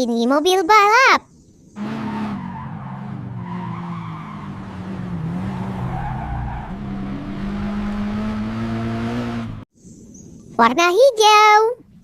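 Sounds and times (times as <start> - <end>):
race car engine drone: 1.8 - 9.6.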